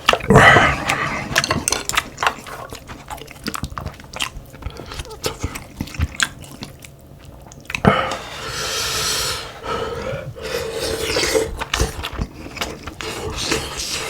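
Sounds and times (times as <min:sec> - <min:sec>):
person slurping broth: 0:07.9 - 0:12.0.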